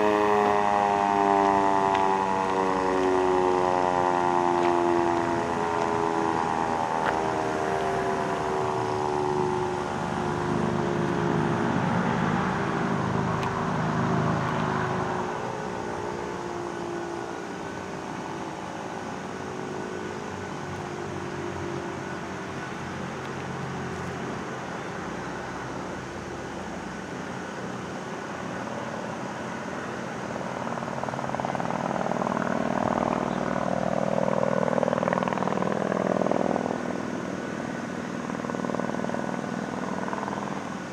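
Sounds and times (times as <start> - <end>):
warning siren winding down: 0.0 - 26.1
outdoor rumble: 0.0 - 40.9.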